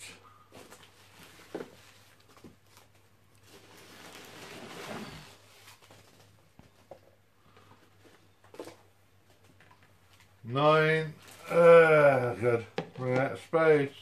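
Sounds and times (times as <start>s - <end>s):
packaging rustling: 0.5s - 10.4s.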